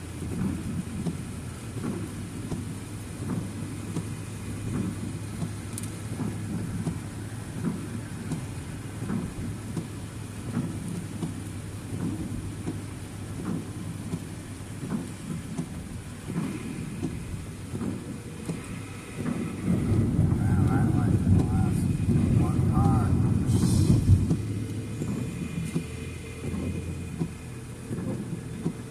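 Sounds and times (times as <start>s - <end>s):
rain on a car: 0.0s - 28.9s
road and engine rumble: 0.0s - 28.9s.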